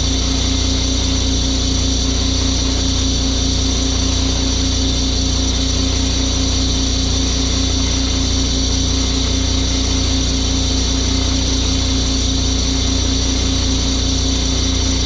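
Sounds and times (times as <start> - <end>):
pressure washer engine running: 0.0 - 15.0.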